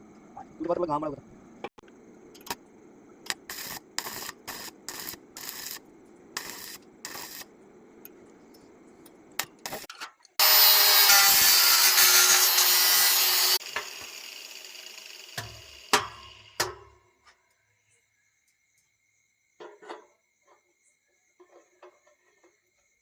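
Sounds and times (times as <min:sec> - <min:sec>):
rubbing strokes on metal: 0:03.3 - 0:05.8, 0:06.4 - 0:07.4
power tool on steel: 0:06.4 - 0:07.4, 0:09.4 - 0:16.8.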